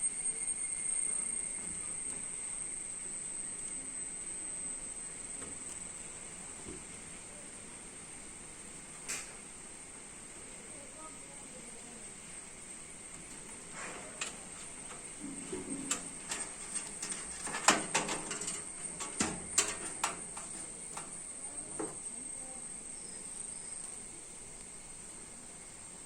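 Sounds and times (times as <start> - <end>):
clicks and knocks of hardware: 14.2 - 22.0.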